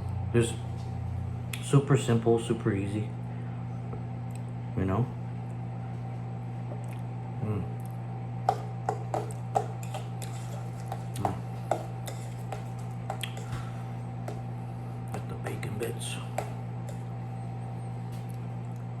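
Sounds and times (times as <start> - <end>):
low electrical hum: 0.0 - 19.0
utensil scraping a bowl: 9.1 - 14.4
squishy food noises: 9.4 - 14.5.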